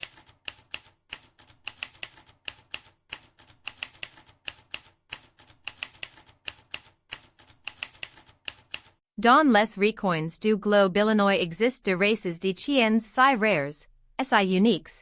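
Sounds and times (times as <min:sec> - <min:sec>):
rapid sharp clicks: 0:00.0 - 0:09.0.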